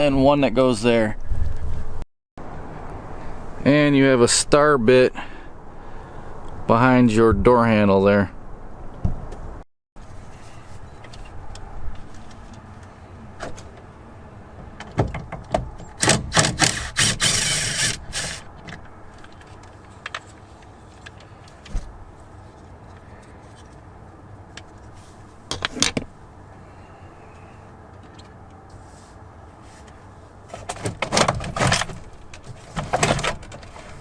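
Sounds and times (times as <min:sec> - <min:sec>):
short rasping burst: 0:16.3 - 0:18.5
tools and screws rattling: 0:30.5 - 0:34.0.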